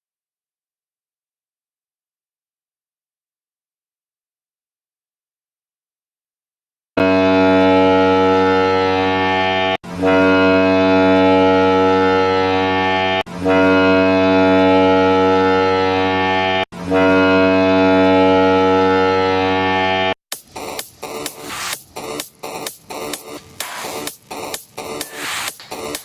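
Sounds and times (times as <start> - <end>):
hockey goal horn blasts: 7.0 - 20.2.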